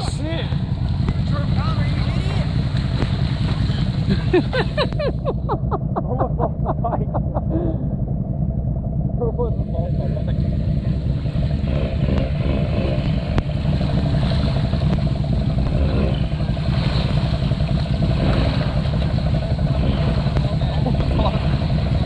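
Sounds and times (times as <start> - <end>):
atv engine running: 0.0 - 22.0.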